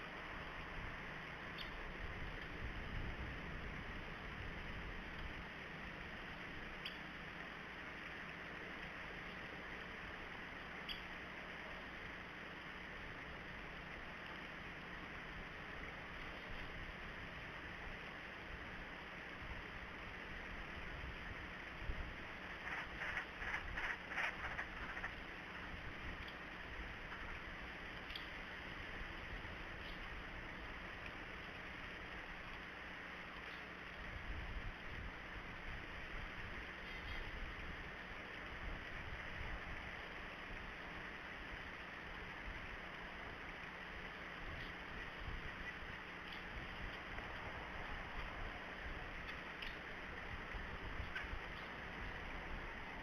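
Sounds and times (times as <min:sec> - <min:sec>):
outdoor background hiss: 0:00.0 - 0:53.0
wind rumble on microphone: 0:00.1 - 0:05.6, 0:15.4 - 0:28.2, 0:34.0 - 0:43.4, 0:44.3 - 0:53.0
faint high chirps: 0:01.5 - 0:01.8, 0:10.8 - 0:11.2.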